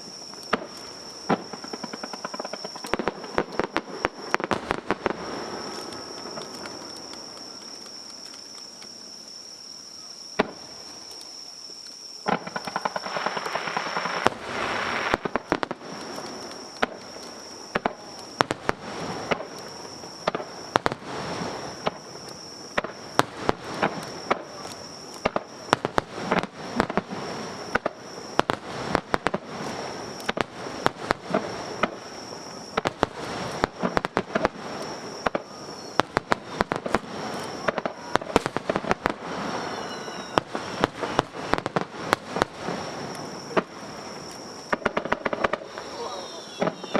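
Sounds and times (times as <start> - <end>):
fireworks sharp bangs: 0.0 - 7.7, 12.2 - 46.9
fireworks crackling: 0.0 - 46.9
fireworks shell bursts: 12.3 - 16.7, 44.6 - 46.9.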